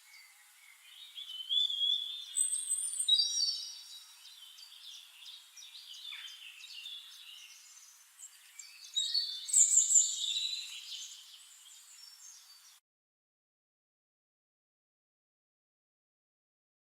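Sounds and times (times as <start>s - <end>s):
birds chirping and singing: 0.0s - 12.8s.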